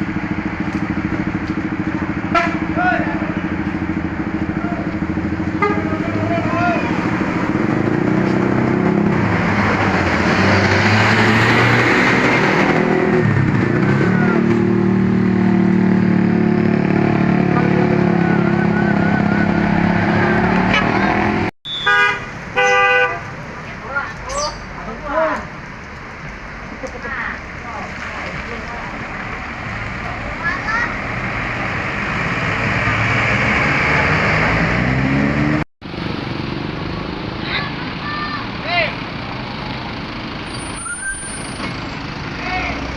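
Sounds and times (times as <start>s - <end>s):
bus passing close by: 0.0s - 21.5s, 28.8s - 42.9s
bus engine running: 28.6s - 42.9s.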